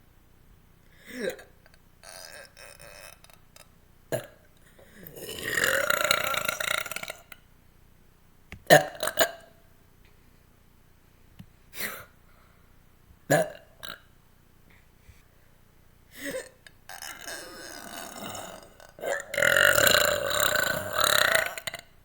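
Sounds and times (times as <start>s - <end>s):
person burping: 1.0s - 7.4s, 8.7s - 9.5s, 13.3s - 14.0s, 16.2s - 21.9s.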